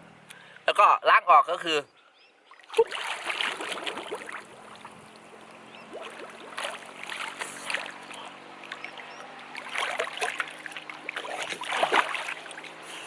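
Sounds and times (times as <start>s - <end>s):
water splashing on face: 2.6s - 4.9s, 5.9s - 12.8s.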